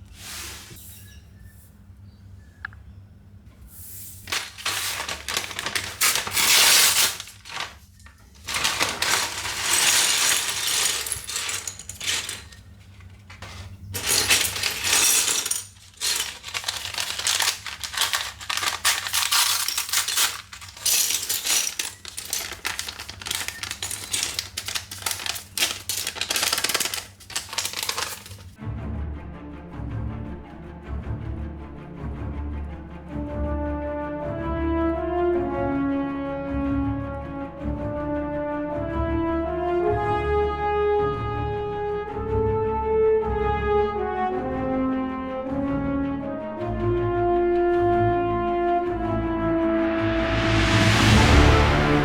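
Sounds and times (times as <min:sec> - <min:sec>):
plastic toy bricks clattering: 0:04.2 - 0:28.6.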